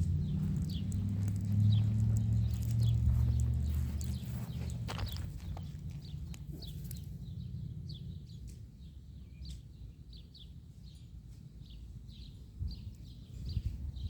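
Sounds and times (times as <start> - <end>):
low steady rumble: 0.0 - 9.3
small birds chirping: 0.0 - 14.0.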